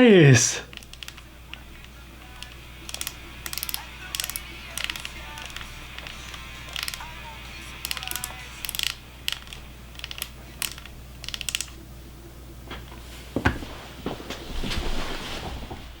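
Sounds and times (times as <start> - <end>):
plastic headset clicks and ticks: 0.7 - 11.8.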